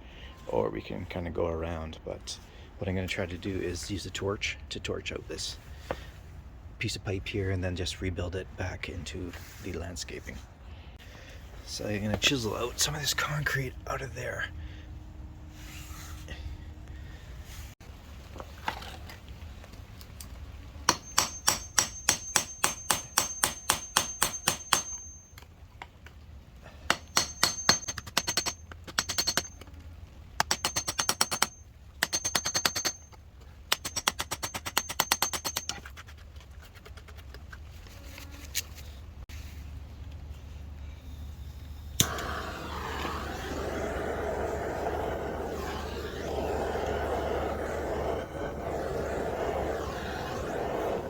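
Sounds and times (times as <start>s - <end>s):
hammer striking steel chisel: 20.9s - 25.4s, 26.9s - 29.7s, 30.4s - 35.8s.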